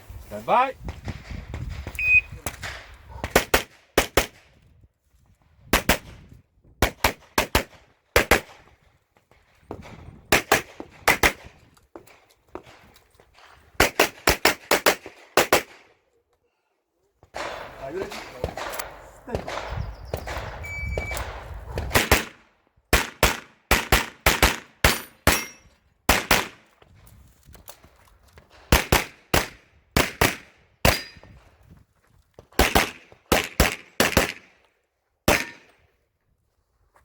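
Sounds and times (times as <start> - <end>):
electronic start beep: 2.0 - 2.4
handgun firing rapid shots: 6.8 - 8.6, 10.3 - 11.5, 21.2 - 25.4, 26.1 - 26.6, 28.7 - 31.1, 32.6 - 34.5, 35.3 - 35.6.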